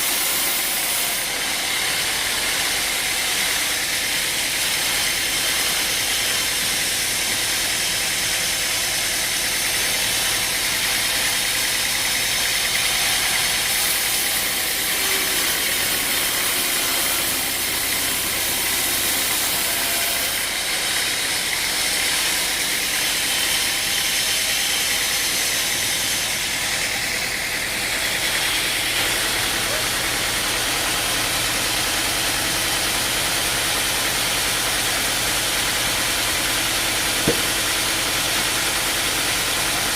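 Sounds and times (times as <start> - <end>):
engine running steadily: 26.2 - 38.5.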